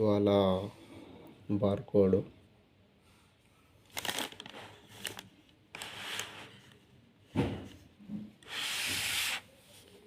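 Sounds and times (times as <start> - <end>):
packaging rustling and scraping: 3.9 - 6.8.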